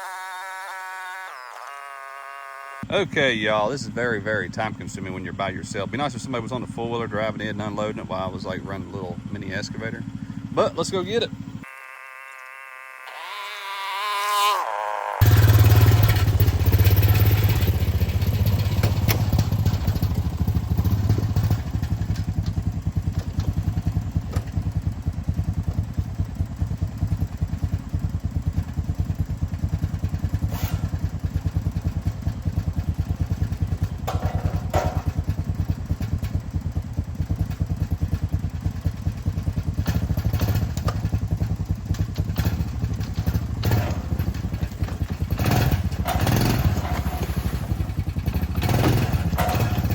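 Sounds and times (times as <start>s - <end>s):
small gasoline engine running: 0.0s - 49.9s
excavator knocks and clanks: 18.3s - 24.8s, 33.2s - 36.4s, 39.8s - 49.9s.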